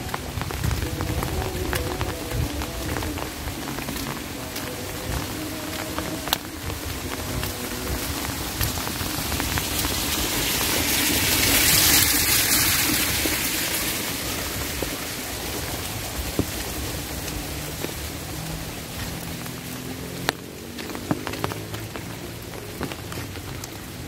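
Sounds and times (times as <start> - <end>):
raindrops ticking close by: 0.0 - 24.0
steady rainfall: 0.0 - 24.0.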